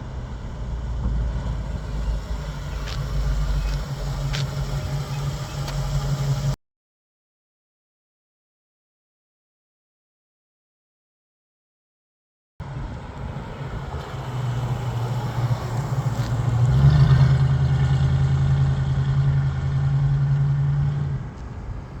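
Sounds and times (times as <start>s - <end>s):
car engine running: 0.0s - 6.6s.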